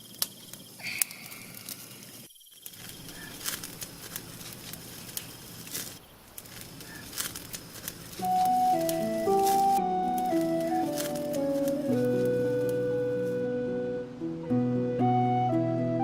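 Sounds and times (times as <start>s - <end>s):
insects chirping with high trill: 0.0s - 14.2s
music: 8.2s - 16.0s.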